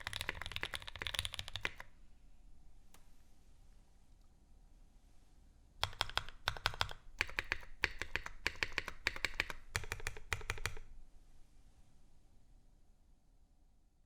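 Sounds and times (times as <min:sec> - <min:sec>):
fast mechanical keyboard typing: 0:00.0 - 0:01.9, 0:05.8 - 0:10.9.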